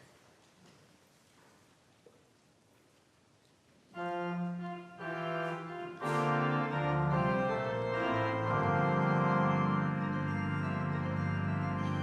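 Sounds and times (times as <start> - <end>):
organ playing held chords: 4.0 - 12.0.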